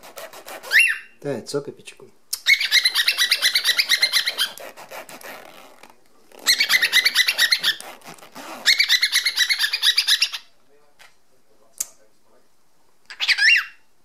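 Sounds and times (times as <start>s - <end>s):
cockatiel chirping: 0.7s - 1.2s, 2.4s - 4.6s, 6.4s - 7.8s, 8.6s - 10.5s, 13.1s - 13.9s.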